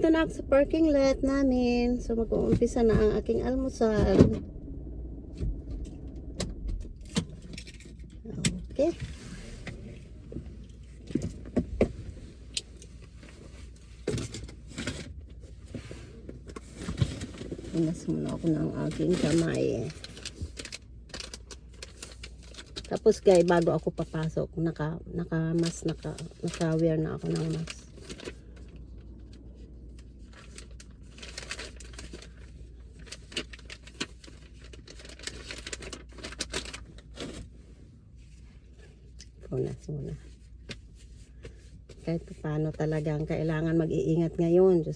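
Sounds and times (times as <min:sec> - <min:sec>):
low steady hum: 0:00.0 - 0:44.9
rustling and clicking of small items: 0:07.0 - 0:24.4, 0:25.5 - 0:37.6
wrappers crinkling: 0:16.6 - 0:24.4, 0:25.5 - 0:28.9, 0:29.8 - 0:37.5.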